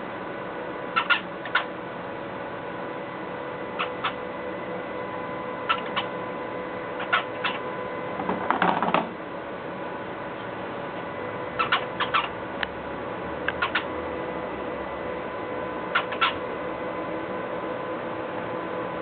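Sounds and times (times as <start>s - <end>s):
faint steady hum: 0.0s - 19.0s
cockatiels chirping: 1.0s - 1.7s, 3.8s - 4.2s, 5.7s - 6.1s, 7.0s - 7.6s, 11.6s - 12.3s, 13.6s - 13.9s, 15.9s - 16.4s.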